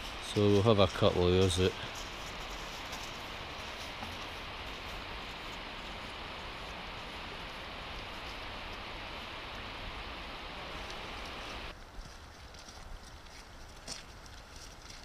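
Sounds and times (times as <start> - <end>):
water rushing: 3.2 - 11.7.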